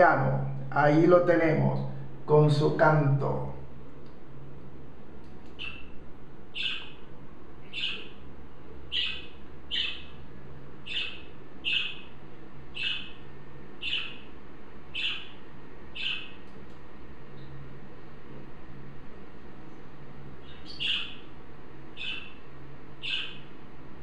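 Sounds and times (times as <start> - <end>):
budgerigar chirping: 5.6 - 5.9, 6.6 - 7.0, 7.7 - 8.2, 8.9 - 10.2, 10.9 - 12.1, 12.8 - 13.2, 13.8 - 14.3, 15.0 - 15.4, 16.0 - 16.4, 20.4 - 21.3, 22.0 - 22.4, 23.0 - 23.5.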